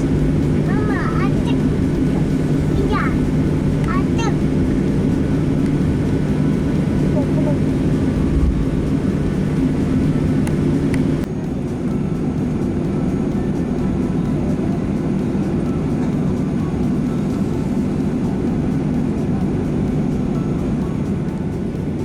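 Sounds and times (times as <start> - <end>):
air conditioning humming: 0.0 - 11.3
airplane engines running: 0.0 - 22.0.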